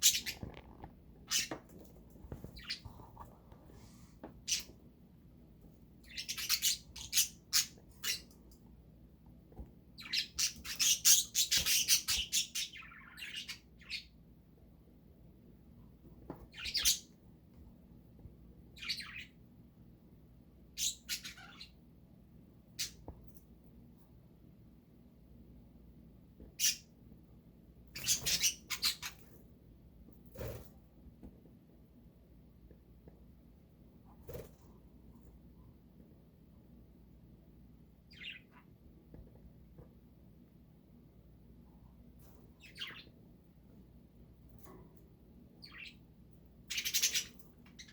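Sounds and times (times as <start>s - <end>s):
budgerigars chirping and squawking: 0.0s - 0.7s, 1.3s - 1.6s, 4.4s - 4.7s, 6.0s - 8.4s, 10.0s - 14.1s, 16.5s - 17.1s, 18.8s - 19.4s, 20.8s - 21.8s, 26.6s - 26.9s, 27.9s - 29.3s, 38.1s - 38.7s, 42.6s - 43.2s, 45.6s - 47.9s.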